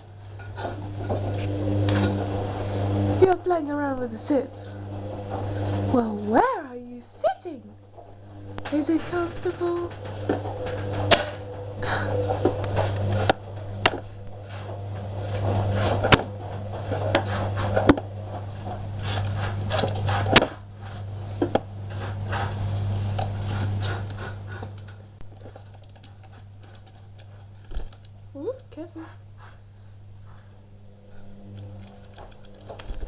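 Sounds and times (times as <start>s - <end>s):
steady low hum: 0.0s - 33.0s
small pet clicking and rustling: 24.8s - 29.5s, 30.8s - 33.0s.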